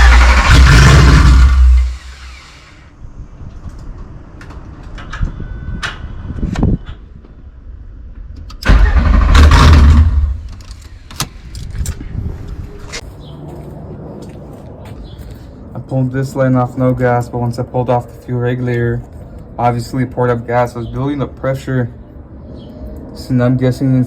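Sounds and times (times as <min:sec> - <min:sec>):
car engine cranking on starter: 0:00.0 - 0:02.4, 0:08.5 - 0:10.6.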